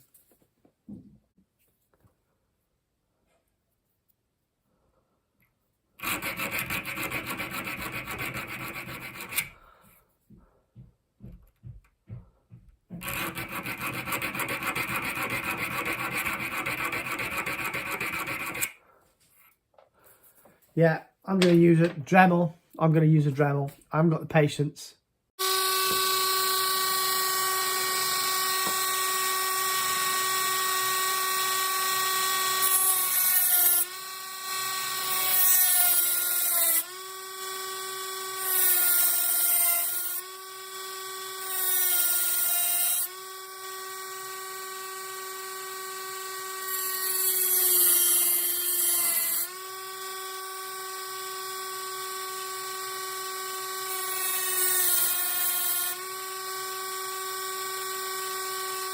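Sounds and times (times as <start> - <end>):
rotary tool grinding steel: 6.0 - 9.6, 12.9 - 18.8, 25.4 - 58.9.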